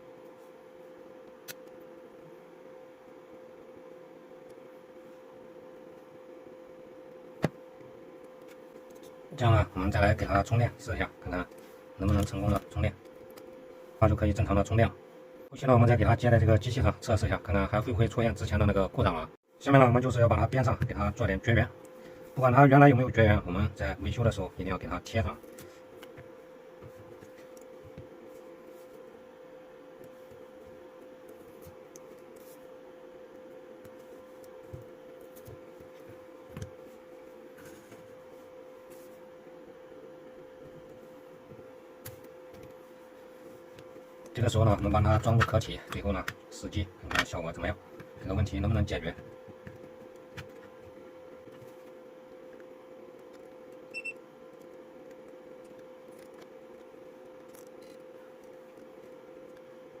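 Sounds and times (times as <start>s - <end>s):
steady hum: 0.0s - 60.0s
faint rustling and scratching: 36.8s - 39.3s.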